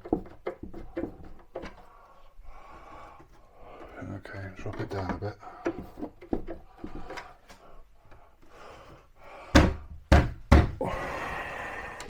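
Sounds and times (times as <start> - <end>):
heavy knocks on wooden cabinet: 9.5 - 10.9
cabinet scraping: 9.6 - 11.2.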